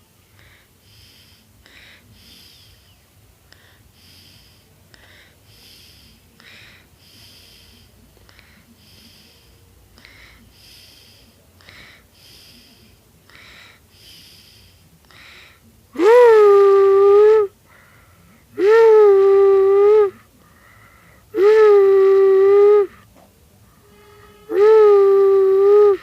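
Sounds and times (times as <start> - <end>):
cat breathing: 0.3 - 15.7, 20.4 - 21.3.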